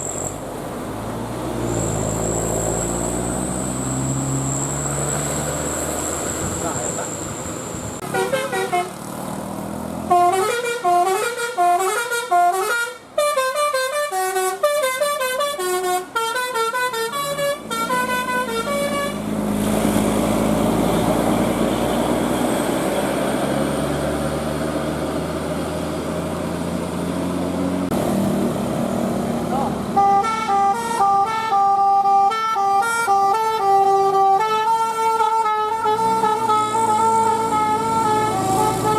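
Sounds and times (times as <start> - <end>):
vehicle engine and road rumble: 0.0 - 38.9
musical bus horn tune: 8.0 - 9.0, 10.1 - 19.4, 29.9 - 38.9.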